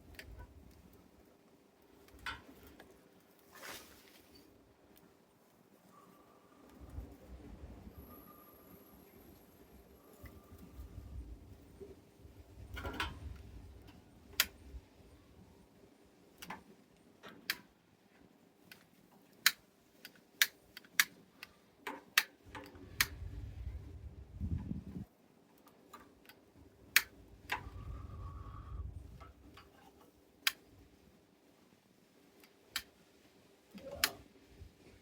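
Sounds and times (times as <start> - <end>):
fire crackling and snapping: 0.0 - 5.6
wind buffeting microphone: 22.8 - 25.1, 27.5 - 29.4.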